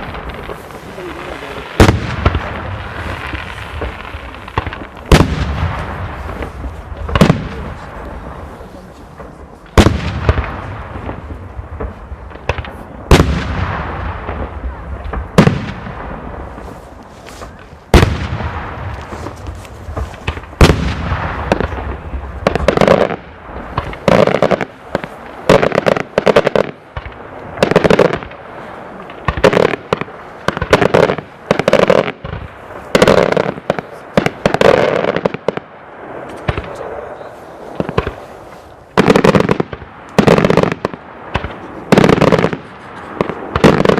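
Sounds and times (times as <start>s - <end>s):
rapid firework bangs: 0.0s - 16.8s, 17.4s - 43.9s.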